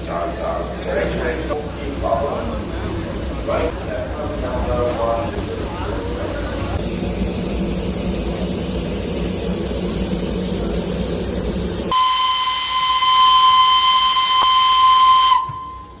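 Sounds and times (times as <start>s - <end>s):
steam locomotive rumbling: 0.0s - 16.0s
steam whistle: 11.9s - 16.0s.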